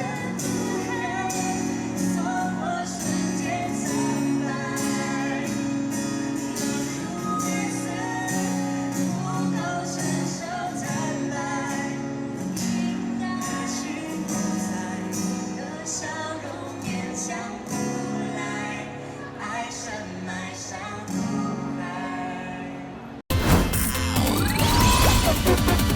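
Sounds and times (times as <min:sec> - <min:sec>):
person singing pop song: 0:00.0 - 0:23.2
strummed guitar: 0:00.0 - 0:25.9.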